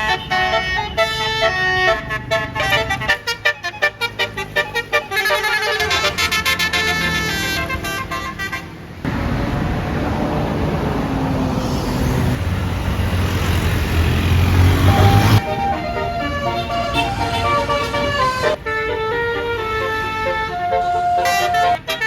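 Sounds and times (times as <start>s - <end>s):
air horn playing tune: 0.0s - 8.8s, 14.8s - 22.0s
bus engine: 0.0s - 22.0s
road rumble: 0.0s - 22.0s.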